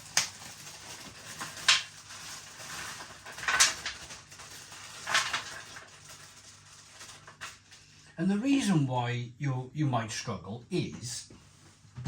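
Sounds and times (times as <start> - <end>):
frozen vegetables scattering on tray: 0.0 - 7.6.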